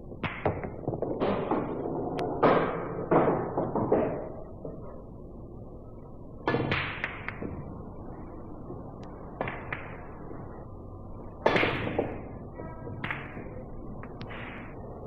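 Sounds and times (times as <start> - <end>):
billiard balls clacking: 0.2 - 4.8.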